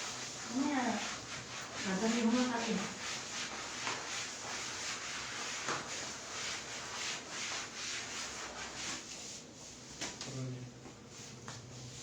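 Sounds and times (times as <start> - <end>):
hands rubbing skin and cloth: 0.0 - 10.3.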